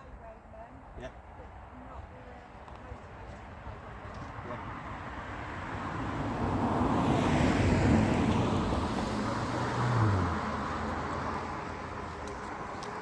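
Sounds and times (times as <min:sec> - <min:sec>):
vehicle passing by: 0:03.5 - 0:13.0.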